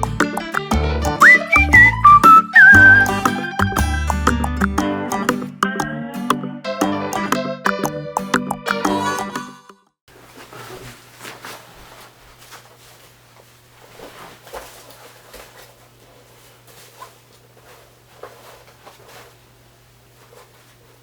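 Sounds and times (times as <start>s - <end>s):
soft taps and rustles: 10.3s - 19.4s.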